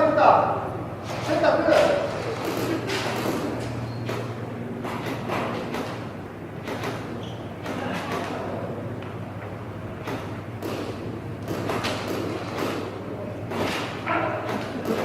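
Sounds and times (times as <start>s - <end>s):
muffled voices: 0.0s - 4.9s, 7.6s - 9.2s
airsoft guns firing: 10.6s - 13.8s.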